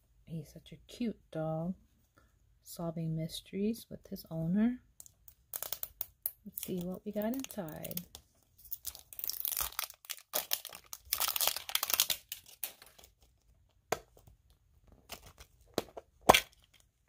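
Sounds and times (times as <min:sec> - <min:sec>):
plastic wrapping crinkling and tearing: 0:05.5 - 0:13.4.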